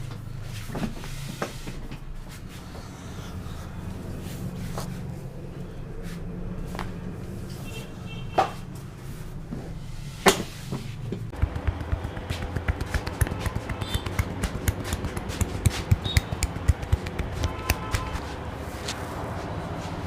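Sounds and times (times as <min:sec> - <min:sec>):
neck joint cracking: 0:11.4 - 0:18.2.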